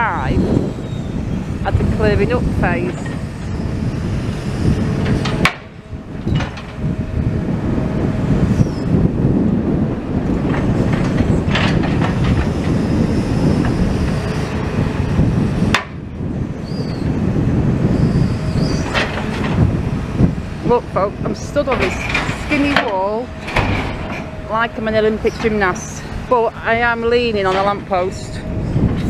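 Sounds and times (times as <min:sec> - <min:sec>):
demolition machinery rumbling: 0:00.0 - 0:29.0
sharp knocks: 0:05.0 - 0:05.7, 0:15.7 - 0:16.0.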